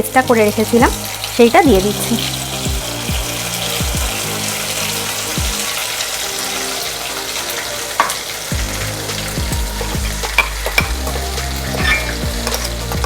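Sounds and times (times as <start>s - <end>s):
paste sizzling in hot oil: 0.0s - 13.0s.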